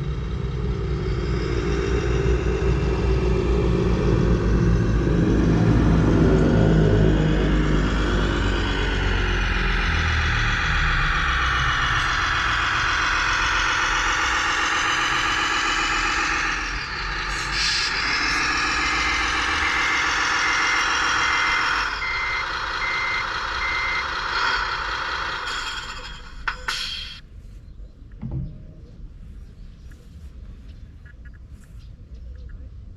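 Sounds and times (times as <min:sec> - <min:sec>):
model vehicle running: 0:00.0 - 0:27.2
reversing beeper: 0:01.2 - 0:27.3.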